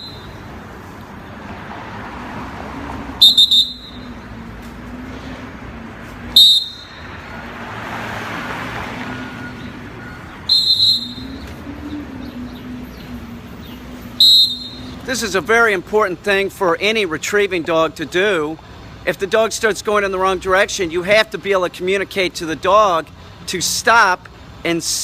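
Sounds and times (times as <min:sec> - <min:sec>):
shrill whistle blasts: 0:00.0 - 0:00.4, 0:03.2 - 0:04.1, 0:06.3 - 0:07.0, 0:09.2 - 0:11.5, 0:14.1 - 0:15.0.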